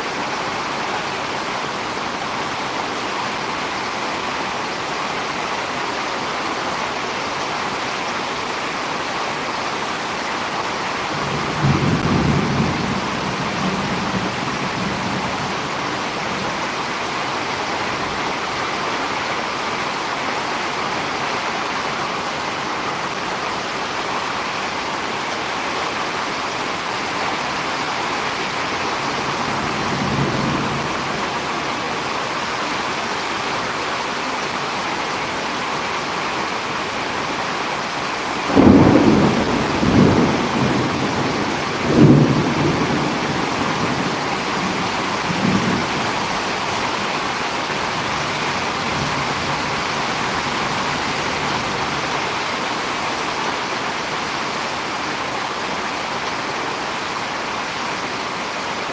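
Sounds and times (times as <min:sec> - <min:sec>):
heavy rain: 0:00.0 - 0:58.9
thunder rumbling: 0:11.1 - 0:16.8, 0:28.9 - 0:31.5, 0:38.5 - 0:52.1.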